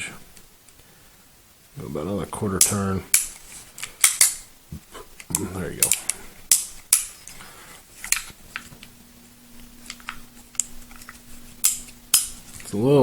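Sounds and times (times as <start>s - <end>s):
faint steady hum: 0.0s - 13.0s
pistol metallic clicks: 2.6s - 4.4s, 5.2s - 7.2s, 9.9s - 12.4s.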